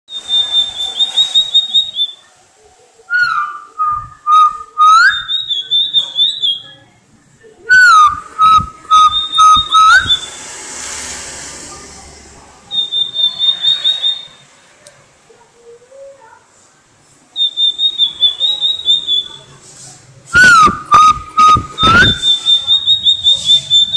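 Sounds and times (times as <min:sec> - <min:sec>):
songbird singing: 0:00.1 - 0:02.3, 0:03.1 - 0:07.0, 0:07.6 - 0:10.4, 0:12.7 - 0:14.5, 0:17.4 - 0:19.6, 0:20.3 - 0:23.9.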